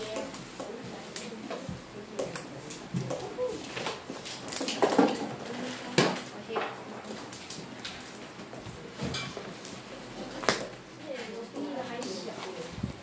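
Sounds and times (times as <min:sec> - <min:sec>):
small knocks and clatter: 0:01.4 - 0:09.5
faint children's voices: 0:03.0 - 0:03.8.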